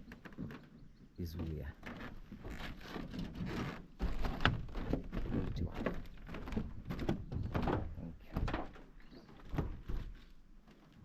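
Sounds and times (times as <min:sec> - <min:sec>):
irregular knocks and thuds: 0:00.0 - 0:10.9.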